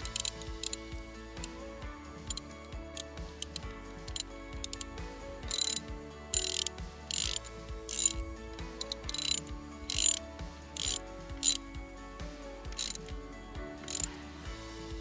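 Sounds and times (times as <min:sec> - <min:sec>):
ratchet wrench clicking: 0:00.0 - 0:01.0, 0:03.4 - 0:04.8, 0:05.5 - 0:05.8, 0:06.4 - 0:08.2, 0:08.8 - 0:10.2, 0:10.8 - 0:11.6, 0:12.8 - 0:13.0, 0:13.8 - 0:14.1
faint background music: 0:00.0 - 0:15.0.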